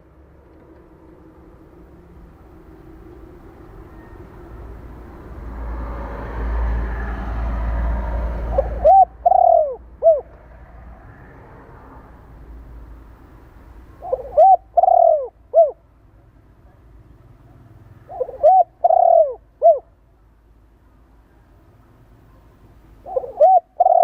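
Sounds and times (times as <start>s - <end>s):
dove cooing: 8.1s - 10.4s, 14.0s - 15.8s, 18.0s - 19.9s, 23.0s - 24.0s.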